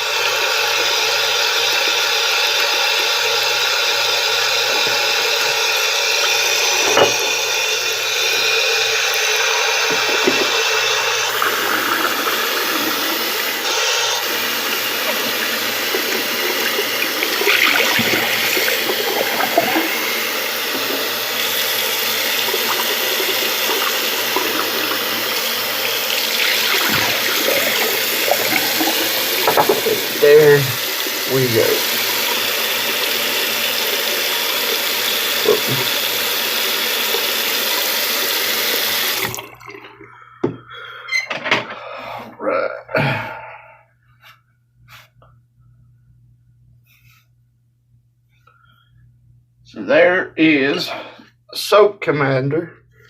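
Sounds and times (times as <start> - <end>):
tap water running into sink: 0.0 - 40.6
brush being rinsed: 3.4 - 40.0.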